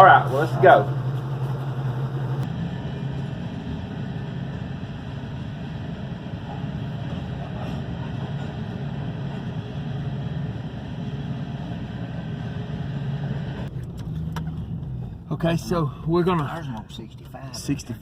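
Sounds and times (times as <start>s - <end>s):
road noise: 0.0s - 18.0s
vehicle engine hum: 0.0s - 18.0s.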